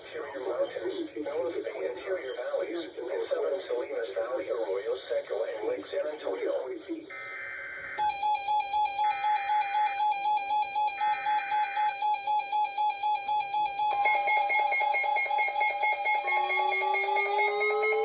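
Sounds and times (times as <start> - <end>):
electronic alarm pulsing beeps: 8.0 - 18.0
rising siren wail: 13.9 - 18.0.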